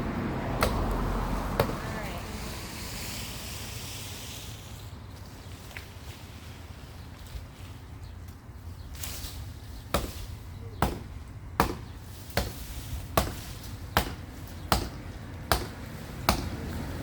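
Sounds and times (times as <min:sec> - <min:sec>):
chopping blows into tree limb: 0:00.6 - 0:01.0, 0:10.8 - 0:12.6, 0:13.2 - 0:16.6.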